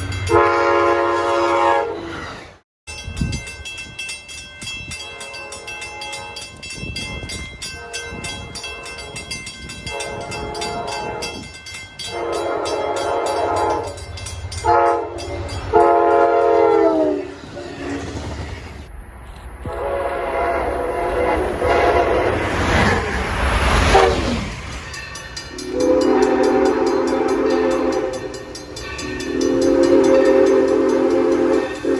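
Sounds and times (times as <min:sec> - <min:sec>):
passing train rumble: 0:00.0 - 0:31.9
locomotive air horn: 0:00.3 - 0:02.2, 0:09.9 - 0:11.4, 0:12.1 - 0:14.0, 0:14.6 - 0:17.8, 0:19.6 - 0:23.0, 0:23.8 - 0:24.4, 0:25.5 - 0:31.9
bell ringing rapidly: 0:24.9 - 0:31.9.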